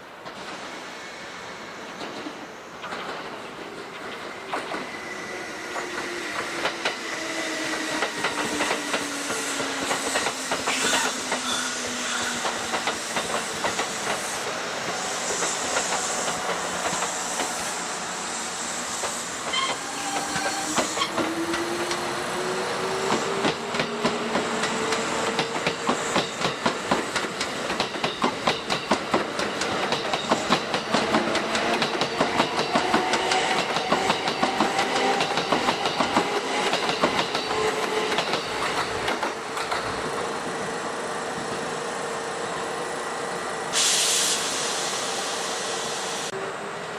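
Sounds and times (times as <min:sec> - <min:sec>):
air hiss: 0:05.0 - 0:27.6, 0:43.2 - 0:46.4
wheels clacking over rail joints: 0:23.0 - 0:40.3.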